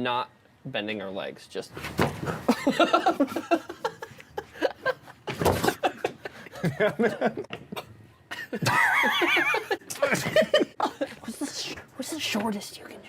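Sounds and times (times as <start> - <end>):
men laughing: 2.2 - 11.4.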